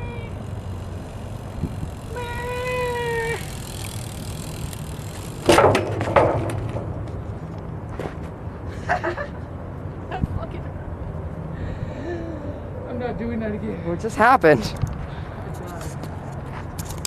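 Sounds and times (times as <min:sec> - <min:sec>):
bike riding rumble: 0:00.0 - 0:17.0
bike crashing clattering impacts: 0:05.1 - 0:07.1.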